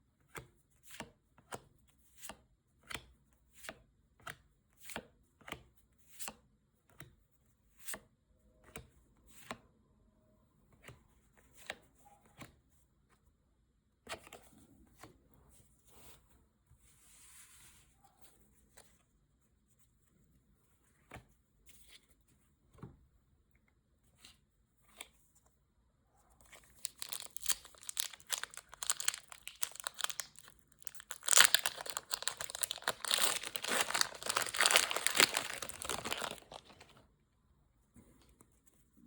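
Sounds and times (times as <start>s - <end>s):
packaging rustling: 26.6s - 37.0s.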